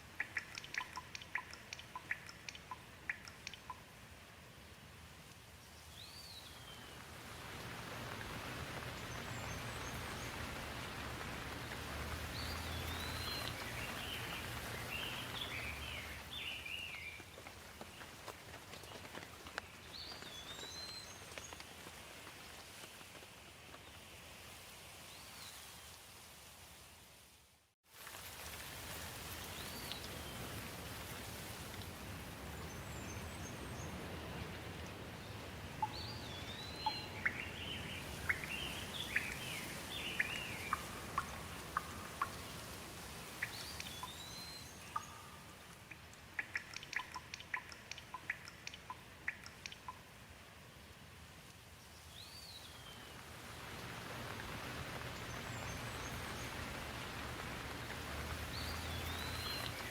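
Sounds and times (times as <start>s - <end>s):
quick dripping ticks: 0.0s - 3.9s, 35.8s - 50.2s
steady rain falling: 0.0s - 59.9s.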